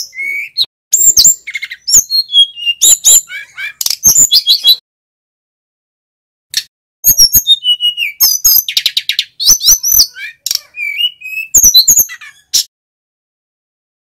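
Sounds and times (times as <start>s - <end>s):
flycatcher singing: 0.0s - 4.8s, 7.0s - 12.7s.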